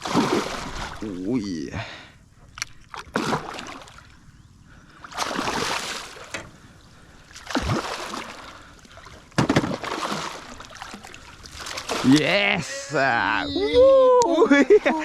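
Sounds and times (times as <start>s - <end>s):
fish splashing in water: 0.0s - 1.0s, 2.6s - 4.1s, 5.0s - 6.3s, 7.3s - 12.2s.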